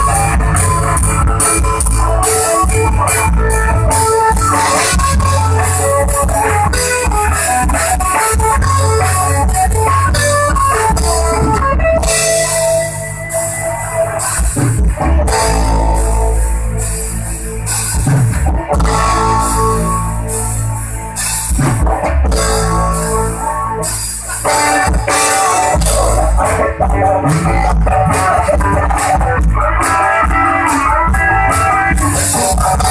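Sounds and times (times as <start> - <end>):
rock band instrumental: 0.0 - 32.9.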